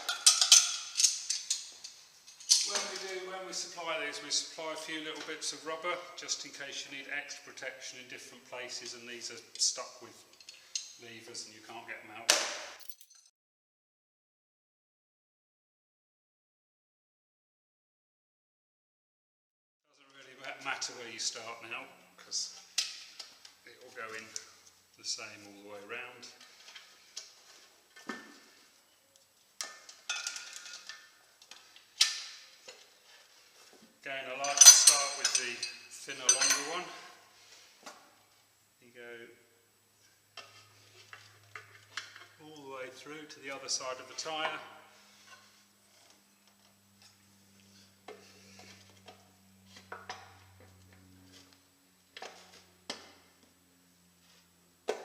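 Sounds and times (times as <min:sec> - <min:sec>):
tyre levers clinking on rim: 0:00.0 - 0:02.9, 0:12.8 - 0:13.3.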